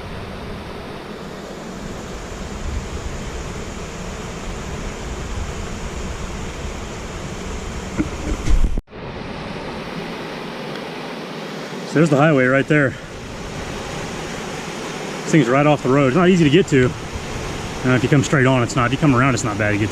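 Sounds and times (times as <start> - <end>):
wind buffeting microphone: 1.8 - 8.8
rushing stream water: 8.0 - 19.9.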